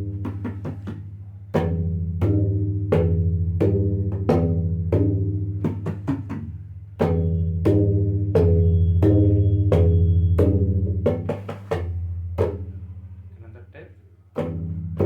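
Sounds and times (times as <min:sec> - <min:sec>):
bass drum strokes ringing: 0:07.0 - 0:13.4.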